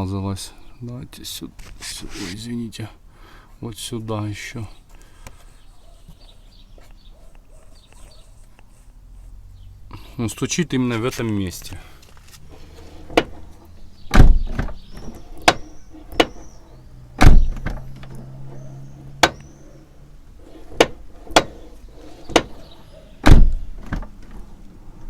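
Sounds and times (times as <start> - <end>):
car door clicks: 12.5 - 19.6, 20.4 - 24.5
car door heavy knocks: 14.1 - 16.6, 17.2 - 19.5, 20.6 - 24.2.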